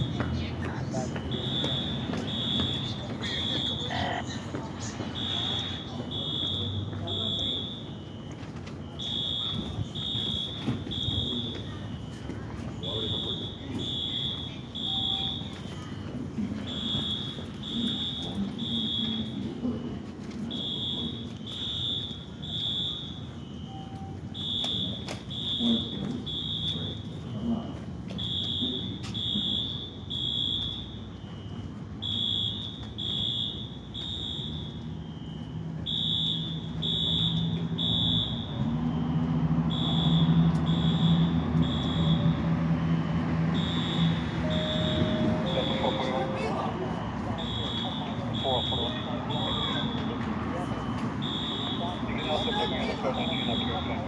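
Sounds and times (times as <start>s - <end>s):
fire alarm beeping: 0.0s - 54.0s
low steady drone: 44.1s - 48.2s.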